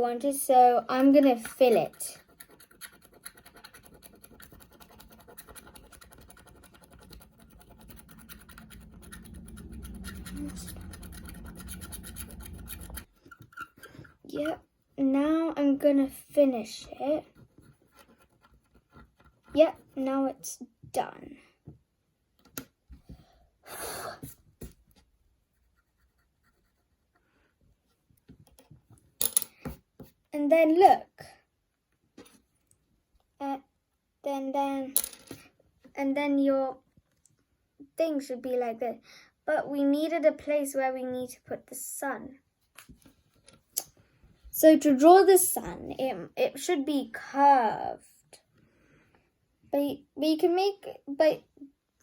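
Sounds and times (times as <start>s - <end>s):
stylus scratching paper: 1.2s - 13.8s, 17.2s - 20.0s.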